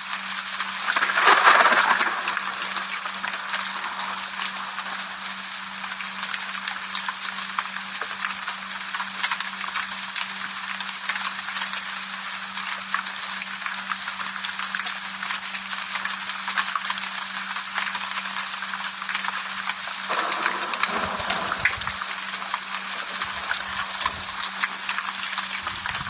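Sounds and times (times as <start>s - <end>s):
rain drops ticking: 0.0s - 26.0s
low hum: 0.8s - 6.7s, 20.0s - 26.0s.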